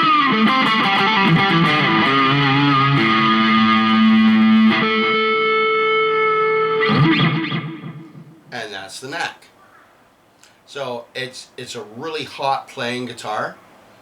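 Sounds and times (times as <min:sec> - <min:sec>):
overdriven electric guitar: 0:00.0 - 0:08.5.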